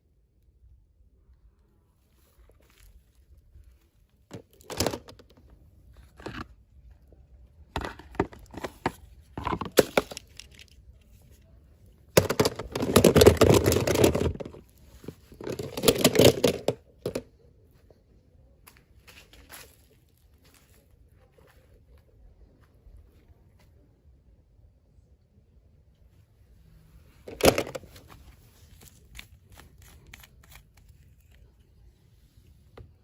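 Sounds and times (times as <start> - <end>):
packaging tearing and crinkling: 28.7 - 31.6.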